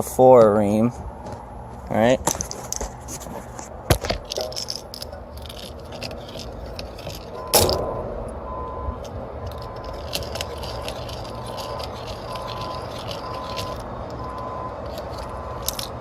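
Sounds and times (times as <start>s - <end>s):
reamer clicking and scraping metal: 4.2s - 7.9s, 9.0s - 16.0s
sharp metal knock: 7.5s - 8.5s.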